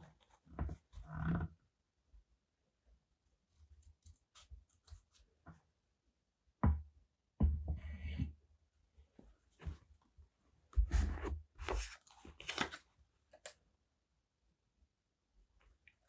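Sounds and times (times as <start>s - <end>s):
paper rustling: 10.9s - 13.5s.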